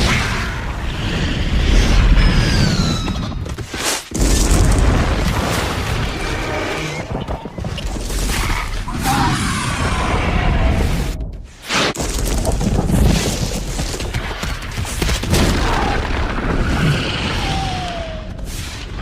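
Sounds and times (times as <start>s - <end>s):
booms of explosions: 14.8s - 19.0s.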